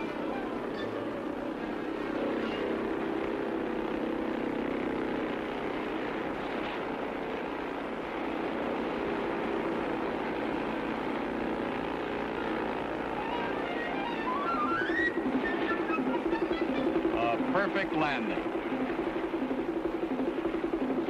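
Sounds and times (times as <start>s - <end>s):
muffled engine drone: 0.0s - 21.0s.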